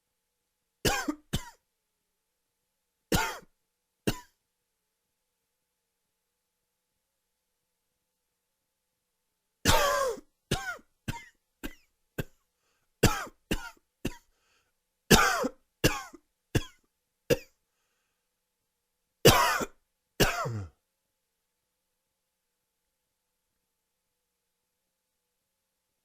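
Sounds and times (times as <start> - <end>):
man coughing: 0.9 - 1.6, 3.1 - 3.5, 9.7 - 12.4, 13.0 - 14.3, 15.1 - 17.6, 19.3 - 20.8.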